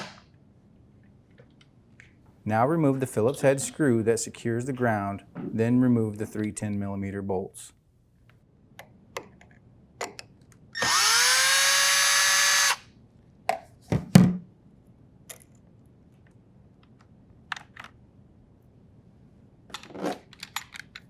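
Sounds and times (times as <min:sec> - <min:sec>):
cordless drill whine: 0:10.8 - 0:12.8.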